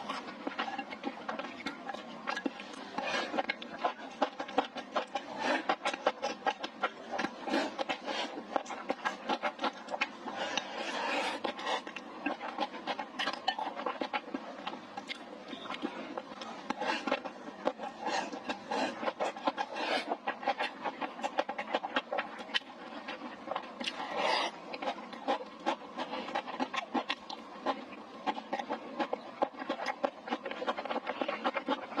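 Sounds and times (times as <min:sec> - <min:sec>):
person chewing: 0:00.0 - 0:32.0.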